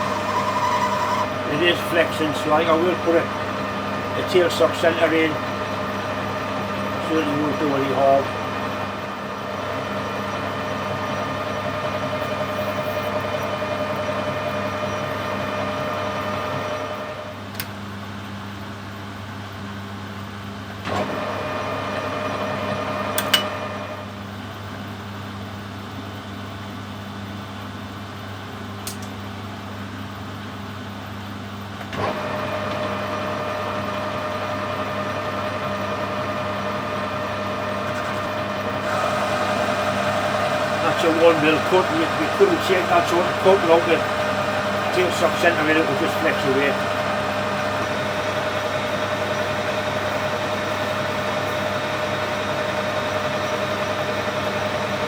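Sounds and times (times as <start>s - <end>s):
metal lathe running: 0.0s - 17.4s, 32.0s - 55.0s.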